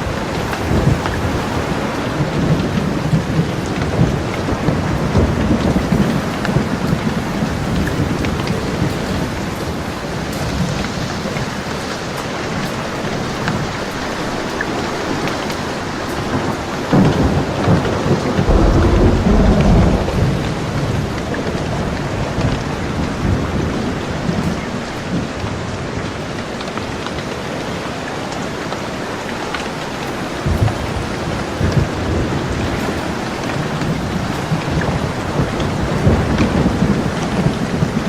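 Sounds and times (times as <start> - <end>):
steady rain falling: 0.0 - 38.0
rolling thunder: 16.2 - 25.6.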